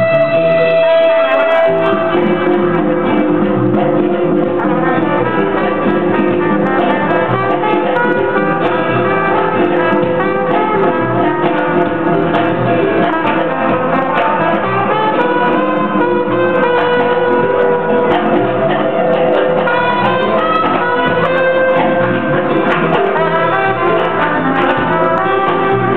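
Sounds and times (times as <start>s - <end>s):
band with brass and guitar: 0.0s - 25.9s.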